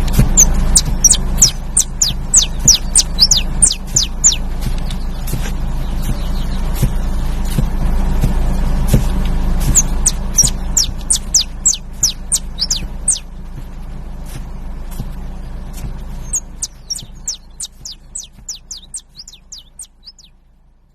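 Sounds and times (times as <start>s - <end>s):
low steady rumble: 0.0s - 20.9s
finch singing sharp notes: 0.2s - 7.0s, 9.7s - 13.4s, 16.1s - 20.4s.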